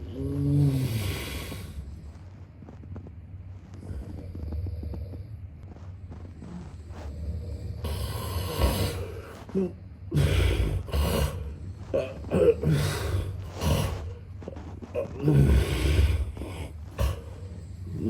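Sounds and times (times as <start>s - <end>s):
man snoring: 0.0s - 2.0s, 6.9s - 18.0s.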